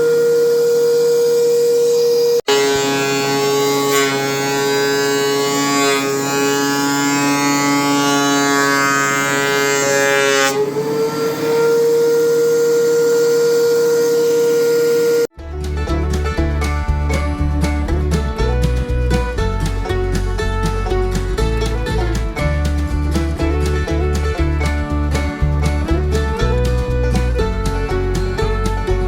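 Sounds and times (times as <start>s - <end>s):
thickness planer planing a board: 0.0s - 15.3s
music: 15.3s - 29.0s.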